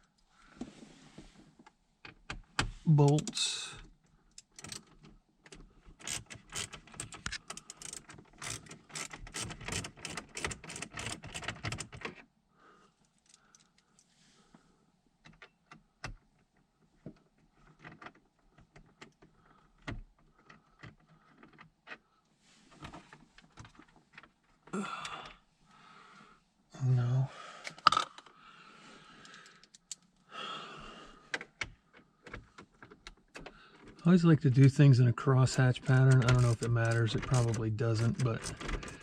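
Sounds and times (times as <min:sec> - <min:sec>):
ratchet wrench clicking: 0:07.5 - 0:11.2, 0:36.2 - 0:36.7
tools and parts being handled: 0:35.8 - 0:39.0.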